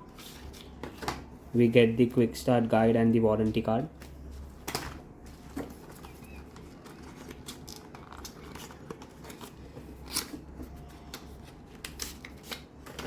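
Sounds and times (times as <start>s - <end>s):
paper and cardboard rustling: 4.2s - 13.0s.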